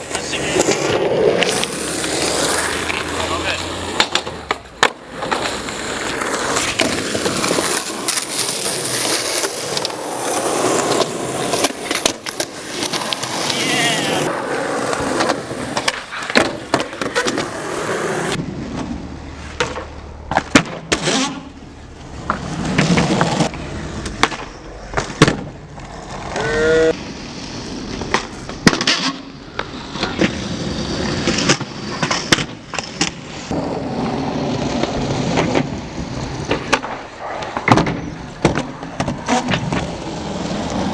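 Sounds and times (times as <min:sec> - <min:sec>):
skateboard clacking: 0:00.0 - 0:18.4, 0:36.4 - 0:40.9
skateboard wheels rolling: 0:00.0 - 0:40.9.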